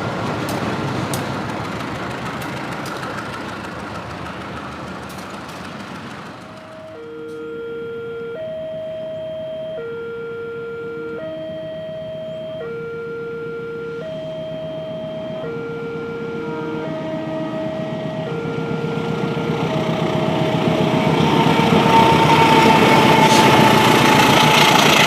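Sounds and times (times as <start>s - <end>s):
traffic and engine rumble: 0.0s - 25.0s
two-tone level crossing alarm: 6.6s - 24.8s.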